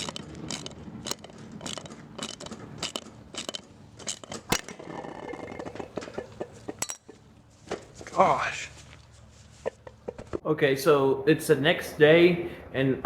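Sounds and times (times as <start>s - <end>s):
crunching crackling clicks: 0.0s - 7.1s.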